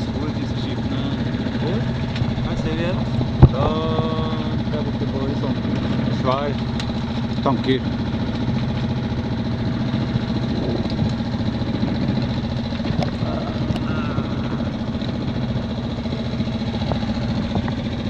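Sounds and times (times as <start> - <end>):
boat diesel engine droning: 0.0 - 18.0.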